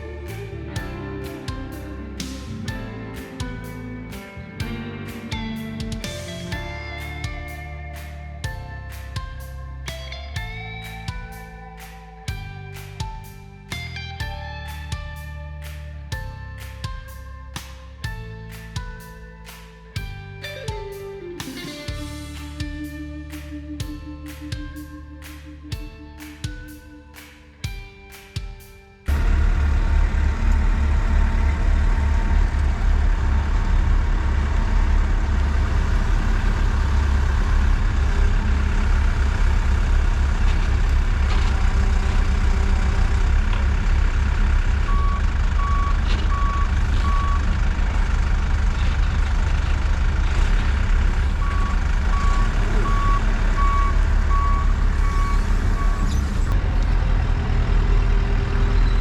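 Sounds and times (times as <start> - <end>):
truck engine rumbling: 0.0 - 23.4, 29.1 - 59.0
reversing alarm beeping: 44.8 - 47.6, 51.3 - 56.6.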